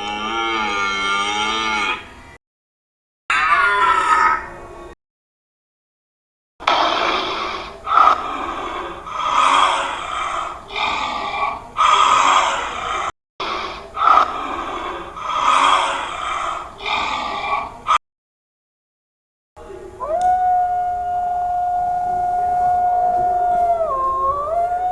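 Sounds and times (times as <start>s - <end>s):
animal rough calls: 0.0s - 2.2s, 6.6s - 18.0s.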